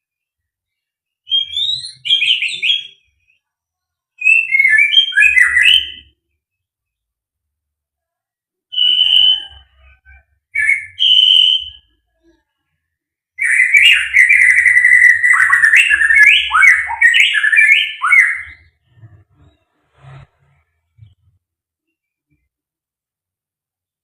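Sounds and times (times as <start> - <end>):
bird singing whistled notes: 1.2 - 3.4, 4.2 - 6.2, 8.7 - 12.0, 13.4 - 18.8.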